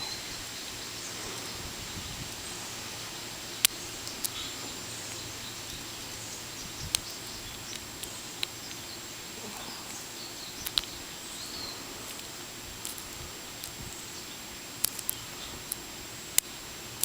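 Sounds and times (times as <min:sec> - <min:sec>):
steady hiss: 0:00.0 - 0:17.0.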